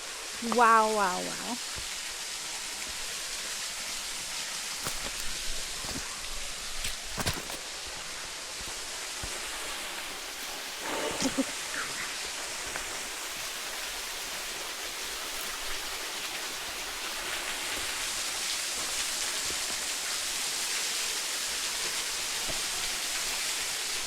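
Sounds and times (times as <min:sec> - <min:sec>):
waterfall splashing: 0:00.0 - 0:24.0.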